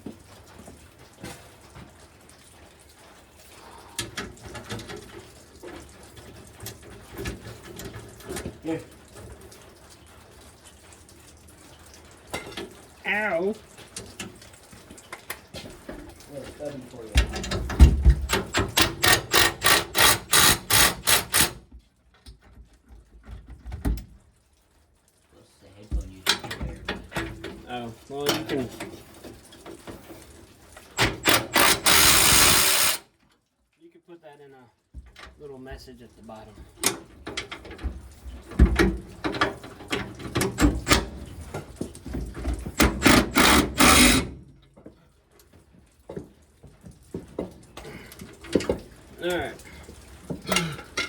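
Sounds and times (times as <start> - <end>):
ratchet wrench clicking: 18.9 - 21.6, 31.0 - 33.0, 43.0 - 44.2
metal rattling: 31.0 - 33.0.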